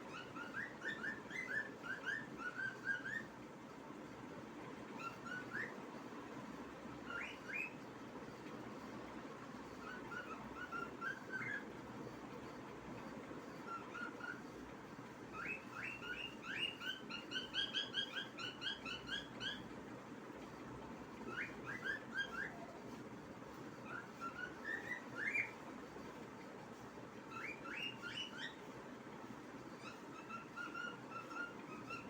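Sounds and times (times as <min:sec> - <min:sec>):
cockatiel whistling: 0:00.1 - 0:03.3, 0:05.0 - 0:05.7, 0:07.1 - 0:07.8, 0:09.8 - 0:11.6, 0:15.4 - 0:19.6, 0:21.3 - 0:22.7, 0:23.8 - 0:25.6, 0:27.3 - 0:28.6, 0:29.8 - 0:32.0.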